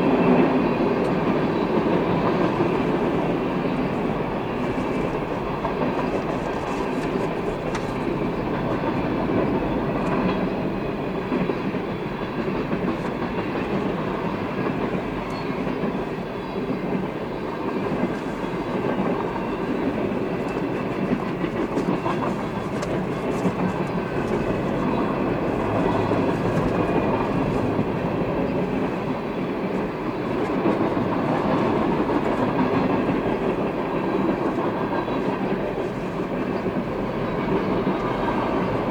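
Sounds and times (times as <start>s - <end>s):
train wheels rolling on rail: 0.0s - 38.9s.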